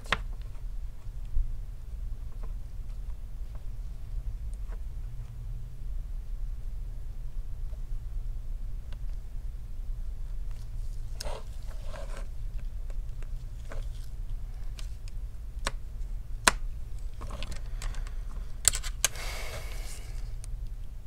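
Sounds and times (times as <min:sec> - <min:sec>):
steady low hum: 0:00.0 - 0:21.0
scraping rustle: 0:10.5 - 0:12.7.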